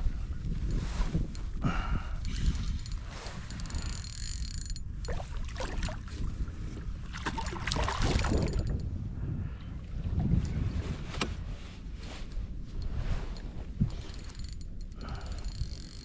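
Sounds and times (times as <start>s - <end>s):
wind buffeting microphone: 0.0s - 16.0s
fishing gear knocking and rattling: 2.2s - 6.2s, 7.2s - 8.9s, 12.8s - 16.0s.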